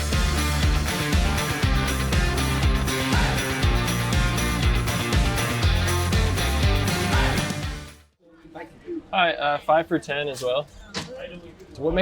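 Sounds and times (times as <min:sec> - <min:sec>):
upbeat pop-rock music: 0:00.0 - 0:08.0.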